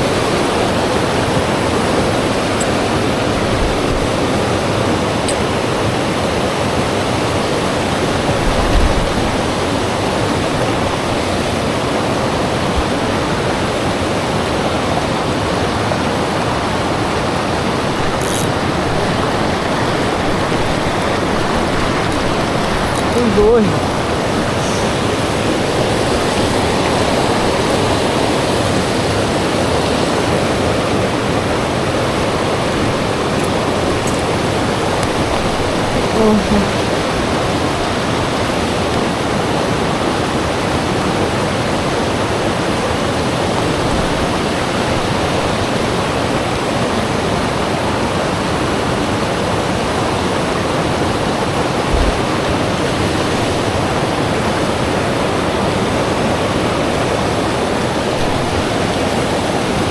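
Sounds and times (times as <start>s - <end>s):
river water rushing: 0.0s - 59.9s
low thump: 51.9s - 52.3s.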